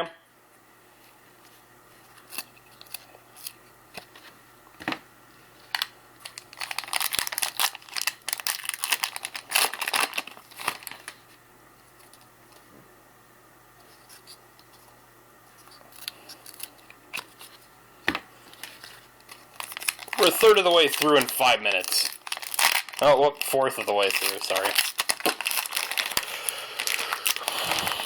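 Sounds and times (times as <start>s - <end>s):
wrapper crinkling and tearing: 5.6s - 11.3s, 15.6s - 17.6s, 18.4s - 28.0s.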